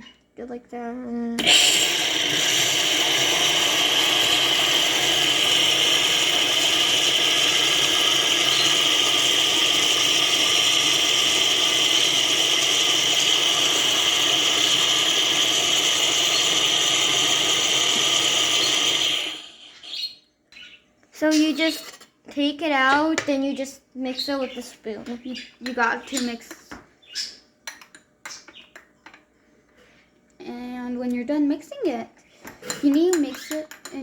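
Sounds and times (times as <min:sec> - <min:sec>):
milk frothing machine running: 0:01.4 - 0:20.1.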